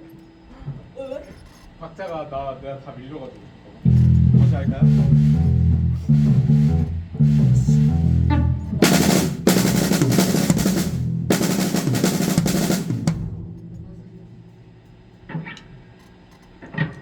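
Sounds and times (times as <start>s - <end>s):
drum kit playing loudly: 4.0s - 13.4s
cymbals ringing: 8.8s - 13.9s.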